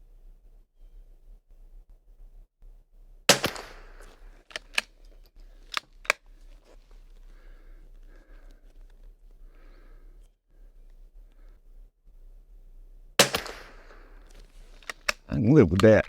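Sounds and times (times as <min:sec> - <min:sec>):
rifle shot: 0:03.3 - 0:04.8, 0:13.2 - 0:16.0
rifle action clicks: 0:03.3 - 0:06.2, 0:13.2 - 0:16.0.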